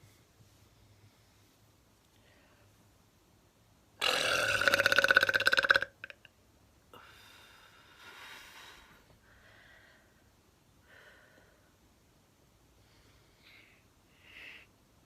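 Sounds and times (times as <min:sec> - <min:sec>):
quiet breathing: 0:00.0 - 0:03.1, 0:06.9 - 0:15.0
woman belching: 0:04.0 - 0:06.3.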